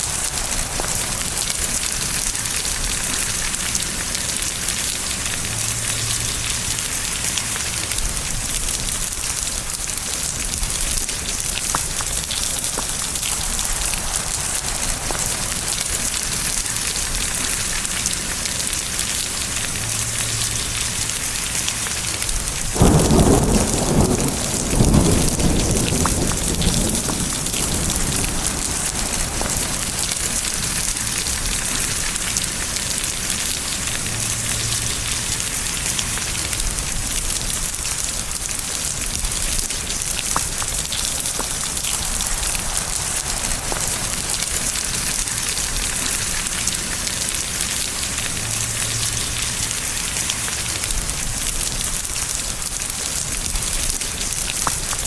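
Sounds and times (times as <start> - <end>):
thunder clap rumbling: 0.0 - 4.7, 8.0 - 17.8, 22.3 - 32.7, 36.0 - 48.4
heavy rain hissing: 0.0 - 55.0.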